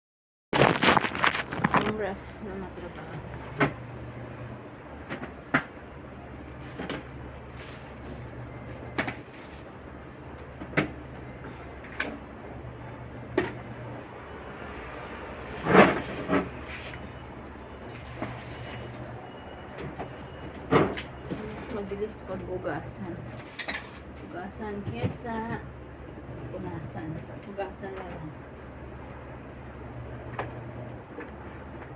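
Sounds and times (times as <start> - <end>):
items and shelves clattering: 0.6 - 3.9, 4.9 - 12.3, 15.4 - 25.7.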